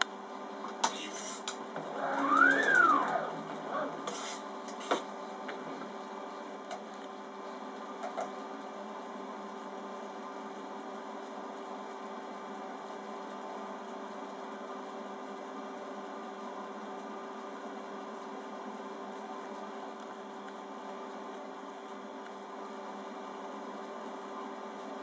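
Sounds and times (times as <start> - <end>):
machine motor hum: 0.5 - 6.8.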